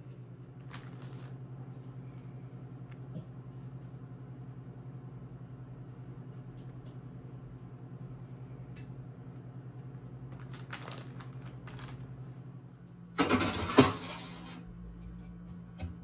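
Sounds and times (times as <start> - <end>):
steady low hum: 0.0 - 16.0
utensils clattering and scraping: 13.2 - 14.6.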